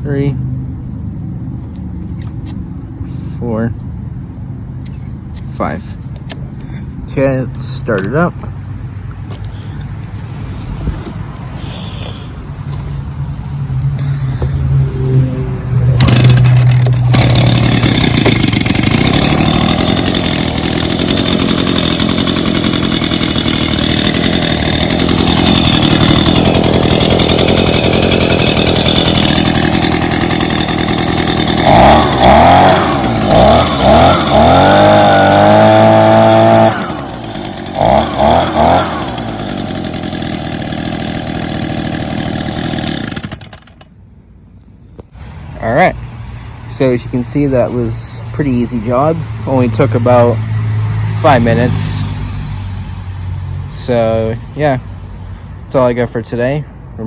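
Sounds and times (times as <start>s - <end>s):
leaf blower engine revving: 9.4s - 43.9s, 51.1s - 52.6s.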